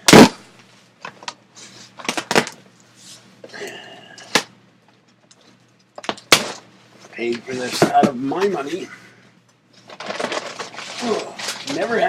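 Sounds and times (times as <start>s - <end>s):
package rustling: 9.8s - 12.0s.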